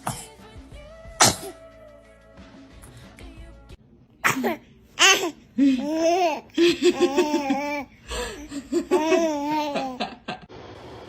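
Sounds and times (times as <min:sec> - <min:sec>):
baby giggling: 0:04.3 - 0:10.3.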